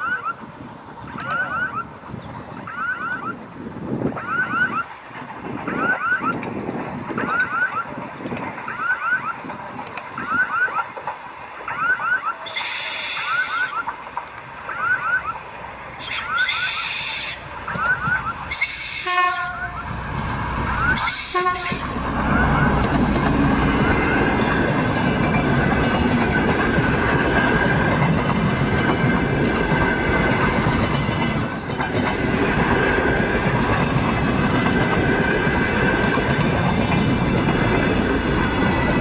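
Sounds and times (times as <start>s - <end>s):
train horn blasts: 12.5s - 13.9s, 16.0s - 17.5s, 18.5s - 20.0s, 21.0s - 22.2s.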